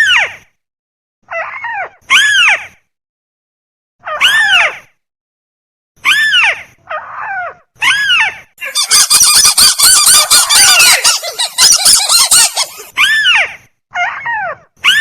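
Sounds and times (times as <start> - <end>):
crake calls: 8.6 - 12.9.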